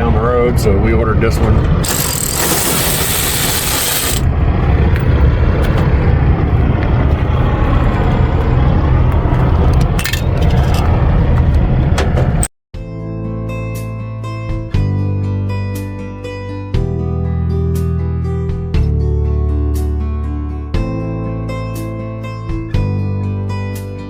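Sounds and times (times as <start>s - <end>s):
metal parts clinking and scraping: 1.8s - 4.2s.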